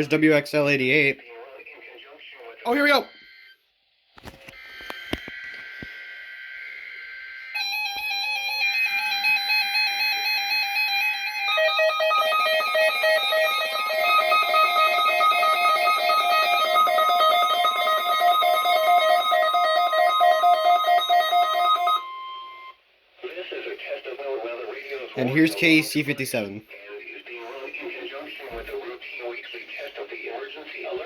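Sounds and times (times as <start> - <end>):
pulsing alarm beeps: 9.8 - 22.8.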